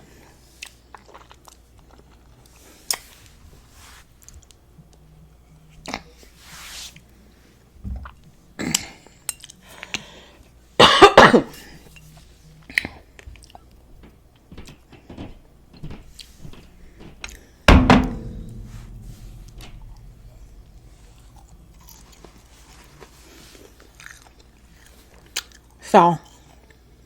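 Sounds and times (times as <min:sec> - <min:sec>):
loud coughs: 0:10.8 - 0:11.5.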